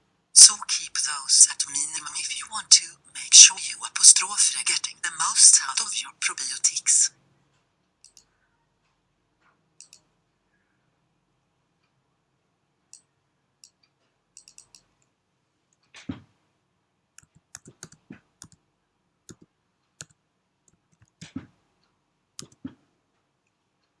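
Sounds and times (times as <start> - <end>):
sharp clicks and taps: 17.2 - 18.6, 19.3 - 21.4, 22.4 - 22.7.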